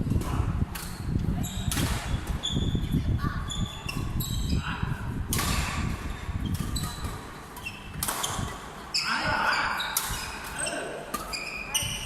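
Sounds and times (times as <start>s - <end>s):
shoes squeaking on court floor: 0.8s - 4.7s, 5.6s - 12.0s
sharp smack: 5.3s - 5.9s.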